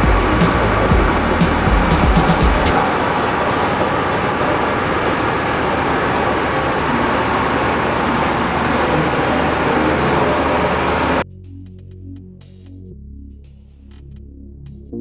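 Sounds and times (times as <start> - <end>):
heavy machinery diesel engine running: 0.0 - 11.2.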